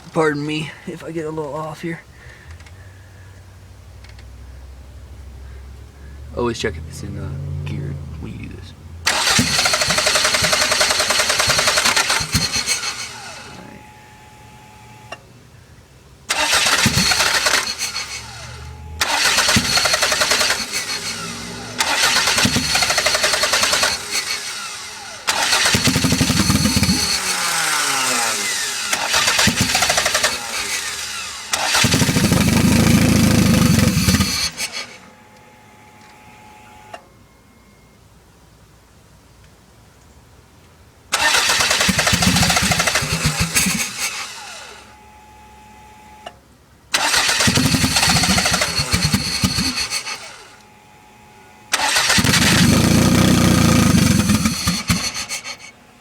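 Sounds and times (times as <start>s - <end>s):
engine catching and stumbling: 9.0s - 13.2s, 16.3s - 24.6s, 25.2s - 35.0s, 41.1s - 44.3s, 46.9s - 50.3s, 51.7s - 55.7s
engine cranking on starter: 9.0s - 14.0s, 16.2s - 35.2s, 41.1s - 44.9s, 46.2s - 50.6s, 51.7s - 55.8s.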